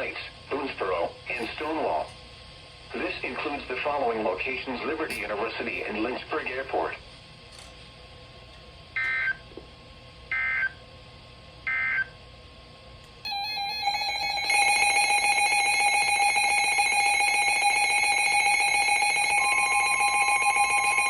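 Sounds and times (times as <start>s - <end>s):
loud steady alert tone: 13.3s - 21.0s.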